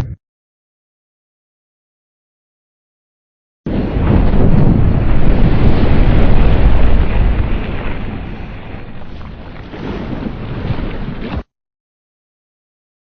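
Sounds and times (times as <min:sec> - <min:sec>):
deep rushing rumble: 0:03.7 - 0:09.5.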